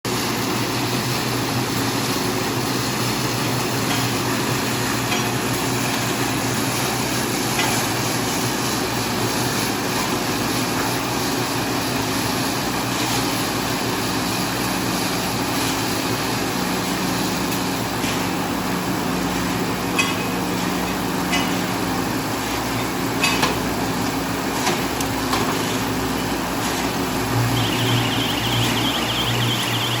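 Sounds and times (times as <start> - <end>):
baler machine humming: 0.1 - 30.0
pulsing electronic beep: 27.4 - 30.0.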